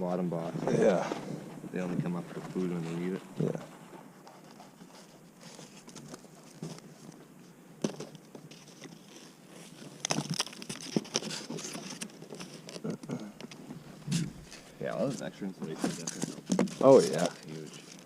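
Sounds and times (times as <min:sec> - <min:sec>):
wrapping material crinkling: 0:08.1 - 0:13.2, 0:14.4 - 0:18.0.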